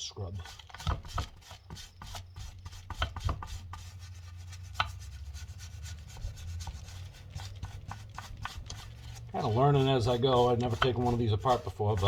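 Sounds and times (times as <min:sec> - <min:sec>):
scrubbing strokes: 0:00.3 - 0:12.0.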